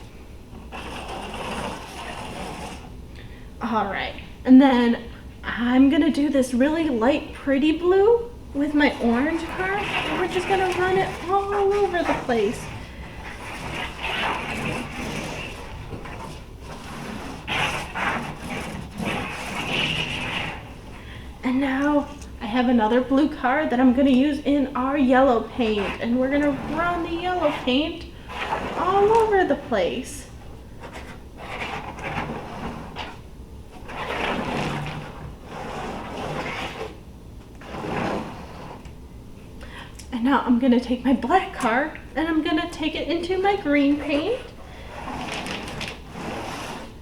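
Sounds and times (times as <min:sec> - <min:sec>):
toy car rolling on paper: 0:00.7 - 0:02.9, 0:08.6 - 0:21.0, 0:21.8 - 0:30.1, 0:30.8 - 0:33.2, 0:33.8 - 0:37.0, 0:37.6 - 0:38.9, 0:43.2 - 0:47.0.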